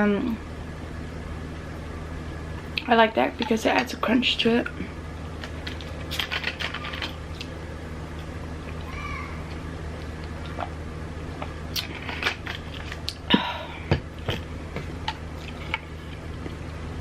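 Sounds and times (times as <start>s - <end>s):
steady low hum: 0.0s - 17.0s
chewing with crisp crunches: 10.0s - 10.8s, 11.4s - 13.3s, 14.2s - 16.8s.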